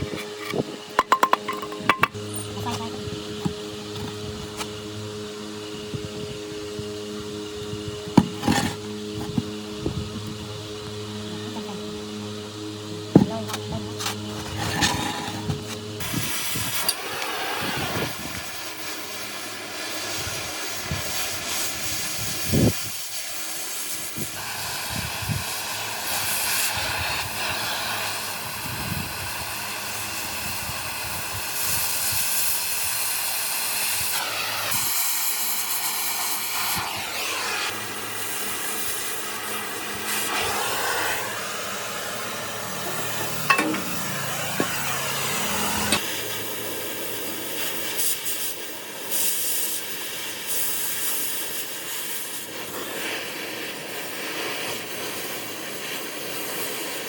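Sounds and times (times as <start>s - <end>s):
sharp knocks: 43.0s - 45.0s.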